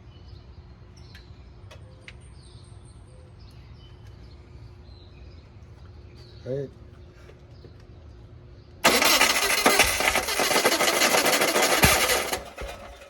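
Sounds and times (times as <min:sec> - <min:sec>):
engine cranked by starter: 0:08.8 - 0:13.0.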